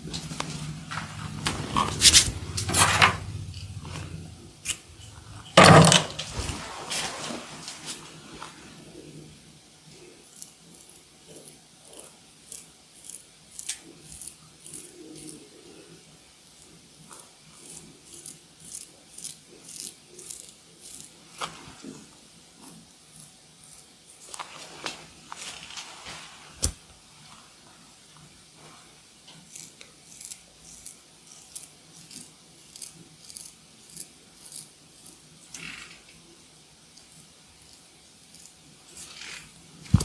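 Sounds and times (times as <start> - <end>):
razor scraping hair: 0.1 - 6.4, 10.3 - 15.4, 17.6 - 21.9, 22.6 - 24.4, 29.4 - 36.0, 37.0 - 40.0.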